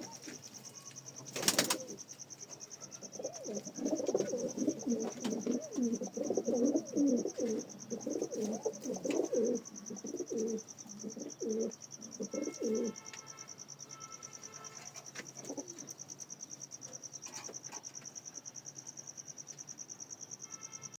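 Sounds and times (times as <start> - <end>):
pigeons cooing: 1.2 - 2.1, 2.8 - 13.0, 14.9 - 16.0.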